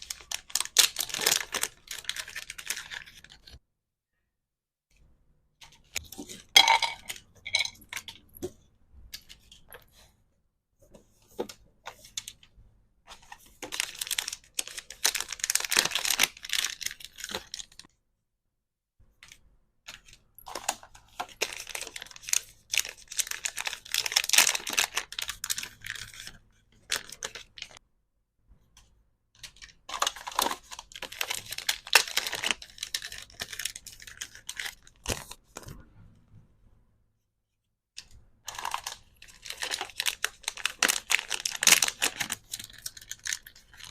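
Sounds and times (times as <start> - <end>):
plastic packaging crinkling: 0.0 - 3.5, 13.2 - 17.8, 20.5 - 27.8, 29.4 - 35.4, 38.5 - 43.9.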